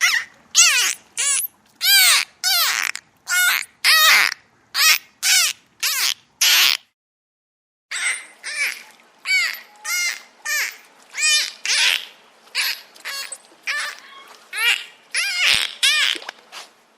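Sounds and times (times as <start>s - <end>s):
harsh cawing cries: 12.6s - 16.1s.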